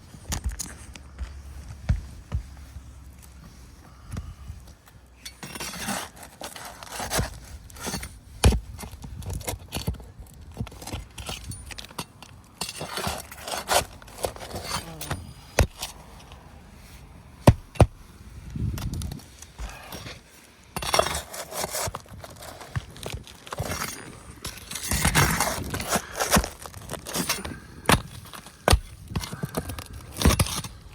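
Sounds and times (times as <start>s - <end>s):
footsteps on roof: 0.0s - 5.0s
scraping on shingle roof: 0.1s - 30.9s.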